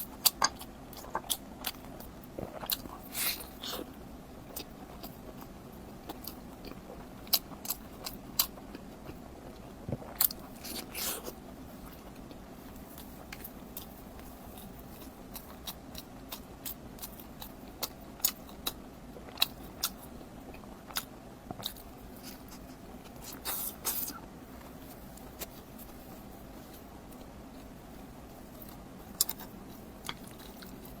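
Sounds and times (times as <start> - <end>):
biting and chewing crunches: 9.9 - 11.4.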